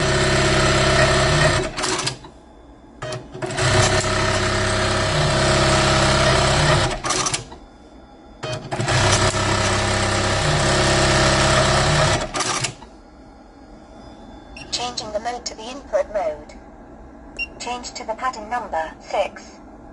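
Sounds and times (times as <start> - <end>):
sewing machine humming: 0.0 - 2.2, 3.1 - 7.5, 8.5 - 12.8.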